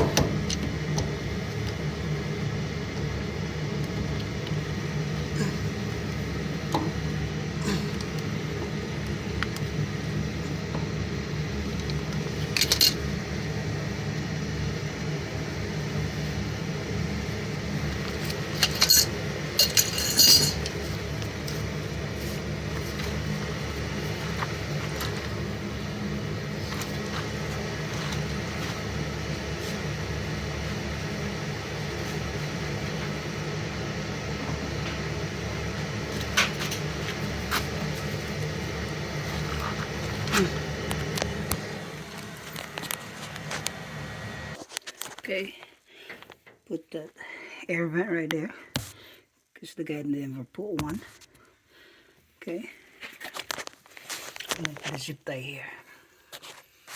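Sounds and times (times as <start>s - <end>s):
furnace humming: 0.0s - 56.9s
clinks of hard parts handled: 18.5s - 20.7s.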